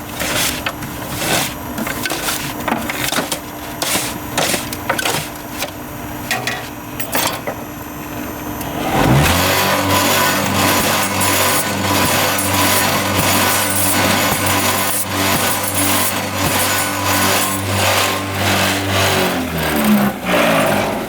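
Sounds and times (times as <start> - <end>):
steady machine hum: 7.6 - 21.0
motor starting up: 8.5 - 21.0
machine knocks and scraping: 8.6 - 20.9.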